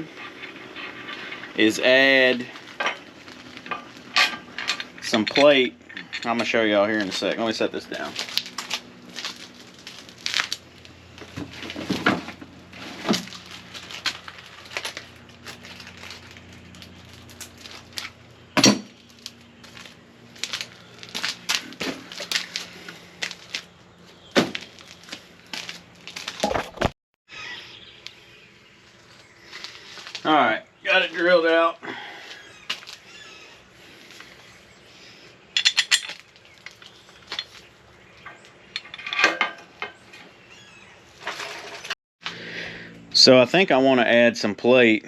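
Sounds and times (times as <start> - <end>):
steel tools clanking: 0.0 - 8.1, 35.6 - 36.3, 38.2 - 40.1.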